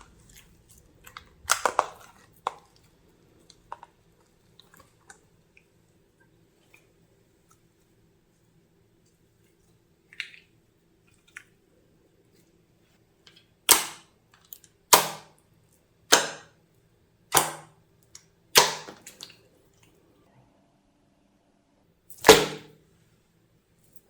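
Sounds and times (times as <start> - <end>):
sharp snapping impacts: 13.7 - 14.0, 14.9 - 15.3, 16.1 - 16.5, 17.3 - 17.7, 18.6 - 19.3, 22.2 - 22.7.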